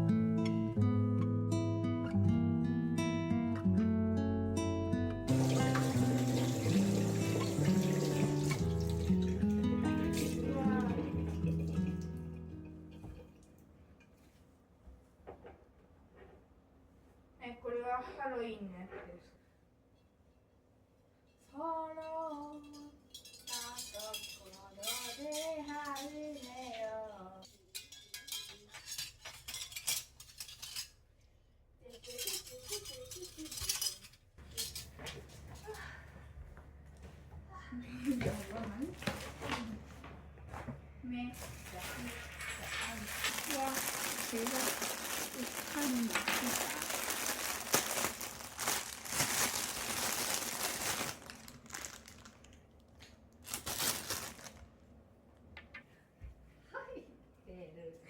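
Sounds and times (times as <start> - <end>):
faint background music: 0.0 - 13.3
small hard objects clinking: 5.3 - 13.0, 41.4 - 52.6, 53.4 - 54.6
packaging crinkling: 41.4 - 54.7.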